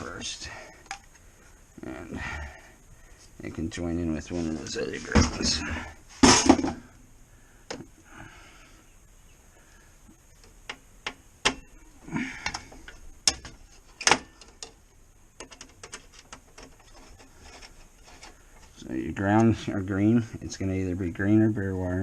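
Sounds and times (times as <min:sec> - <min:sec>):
faint rubbing: 0:03.0 - 0:06.2, 0:16.0 - 0:19.8.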